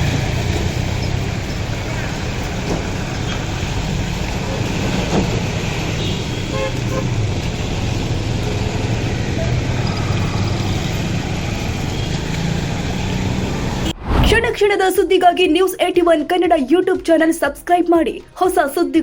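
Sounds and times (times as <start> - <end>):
road traffic engines rumbling: 0.0 - 14.5
car horn tooting: 5.9 - 7.2.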